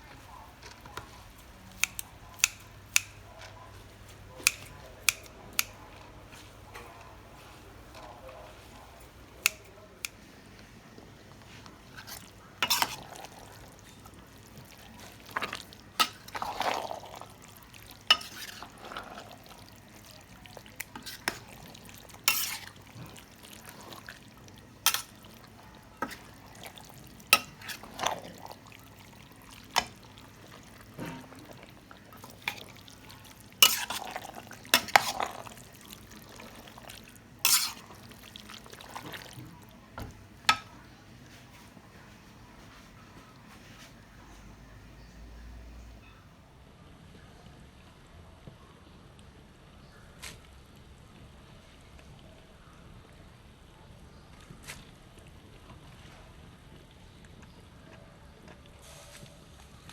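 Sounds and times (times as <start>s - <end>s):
utensil stirring food in pot: 0.0s - 44.0s.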